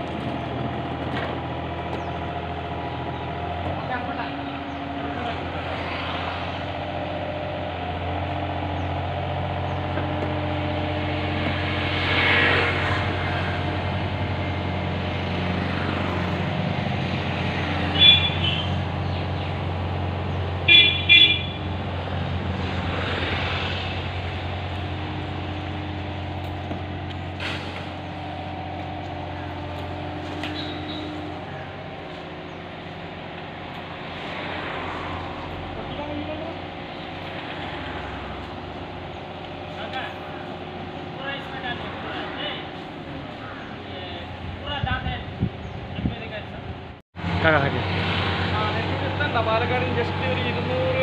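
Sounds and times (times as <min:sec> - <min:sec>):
diesel engine running under load: 0:00.0 - 0:44.6, 0:45.3 - 0:51.0
vehicle horn toots: 0:17.9 - 0:18.8, 0:20.6 - 0:21.7, 0:29.5 - 0:31.6.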